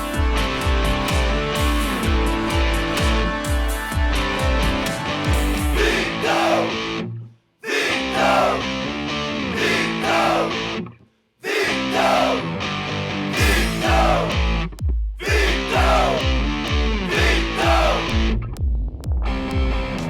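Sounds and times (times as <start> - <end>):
steady bass drum beat: 0.0 - 6.0, 13.4 - 20.0
rock song with distorted guitar: 0.0 - 7.1, 12.4 - 18.5.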